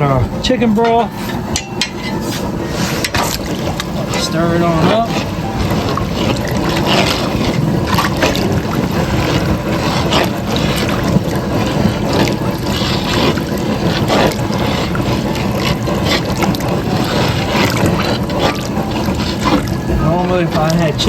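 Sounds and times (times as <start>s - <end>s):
stirring rice in a pot: 0.4s - 21.0s.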